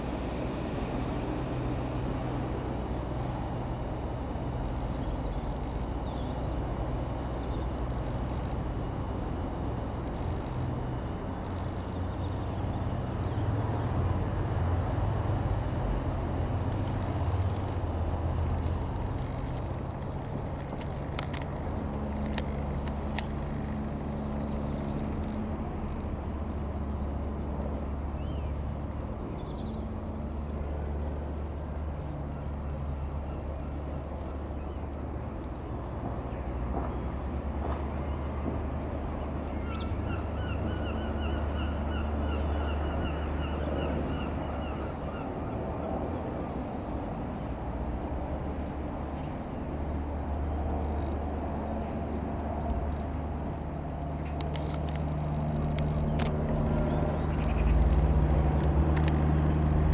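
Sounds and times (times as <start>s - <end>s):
distant engine drone: 0.0s - 59.9s
birds calling: 37.8s - 59.9s.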